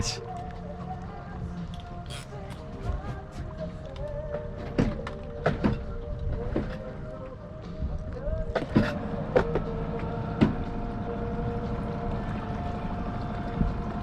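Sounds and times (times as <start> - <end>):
boat motor rumbling: 0.0 - 14.0.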